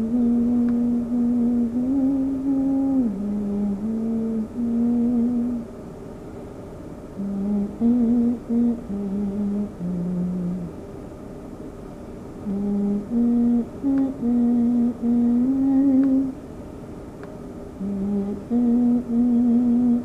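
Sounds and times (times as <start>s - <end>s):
person humming a melody: 0.0s - 5.7s, 7.2s - 10.7s, 12.4s - 16.4s, 17.8s - 20.0s.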